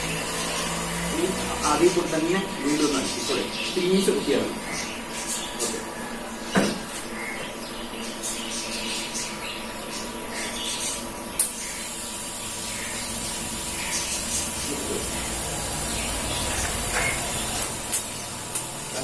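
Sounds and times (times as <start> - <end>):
welding arc hissing: 11.4 - 19.0.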